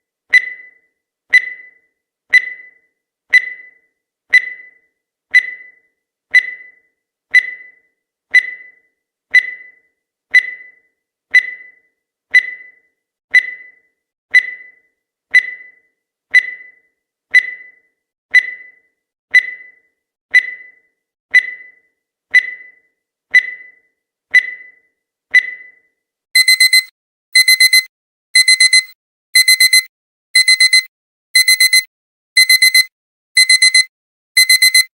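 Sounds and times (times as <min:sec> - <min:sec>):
digital alarm clock beeping: 0:00.3 - 0:25.8, 0:26.4 - 0:34.9
high timer ticks: 0:26.4 - 0:34.9.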